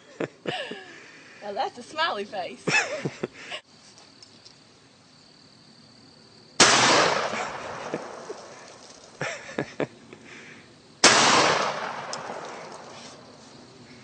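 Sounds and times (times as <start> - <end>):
shotgun shots echoing: 6.6 - 8.6, 11.0 - 12.9.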